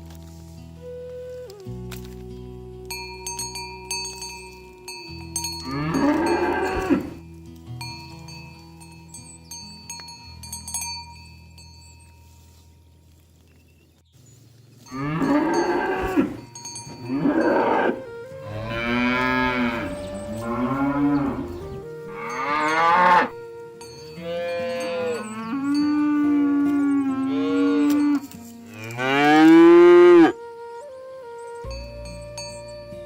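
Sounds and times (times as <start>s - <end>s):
cattle mooing: 5.6s - 7.2s, 14.9s - 23.4s, 24.2s - 30.4s.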